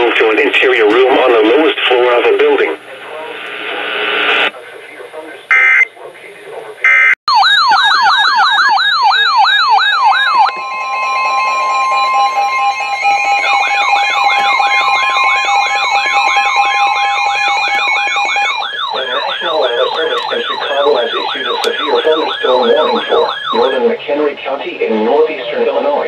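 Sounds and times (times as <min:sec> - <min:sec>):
electronic yelping siren: 0:05.5 - 0:05.9, 0:06.9 - 0:24.0
two-tone alert signal: 0:10.2 - 0:23.9
person speaking: 0:19.0 - 0:26.0.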